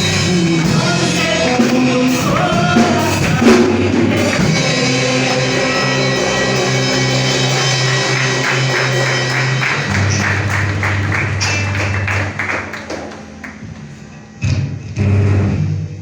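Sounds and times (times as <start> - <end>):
pulsing bass line: 0.0 - 12.7
band held chords: 0.0 - 15.5
drums: 0.0 - 16.0.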